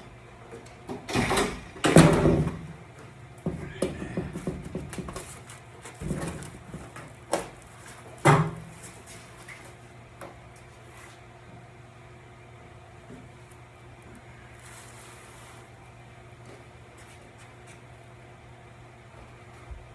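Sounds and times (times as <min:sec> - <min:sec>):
steady low hum: 0:00.0 - 0:19.9
knocks and clunks of car parts: 0:00.6 - 0:08.8.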